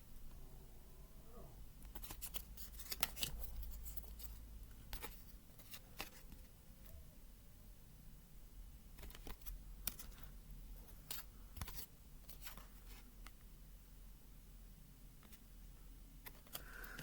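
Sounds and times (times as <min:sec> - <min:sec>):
cards and paper rustling: 0:01.9 - 0:06.5, 0:09.0 - 0:13.1, 0:16.2 - 0:17.0.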